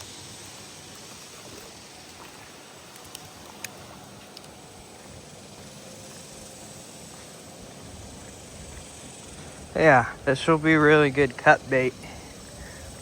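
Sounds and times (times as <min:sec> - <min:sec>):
river hiss: 0:00.0 - 0:13.0
faint clicks: 0:02.9 - 0:04.6.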